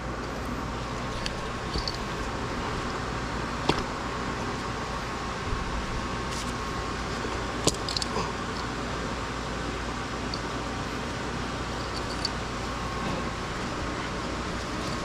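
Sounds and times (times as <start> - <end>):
fan-like hum: 0.0 - 15.0.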